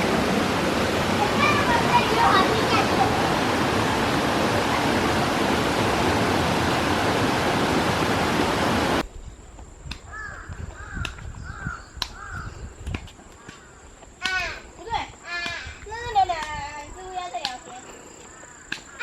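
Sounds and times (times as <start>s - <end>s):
rushing waterfall: 0.0s - 9.0s
crow cawing: 10.1s - 12.6s, 13.4s - 14.6s.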